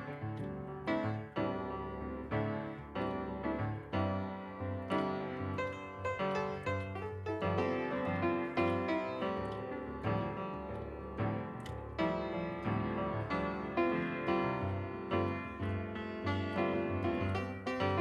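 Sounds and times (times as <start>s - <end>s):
piano melody with steady beat: 0.0s - 18.0s.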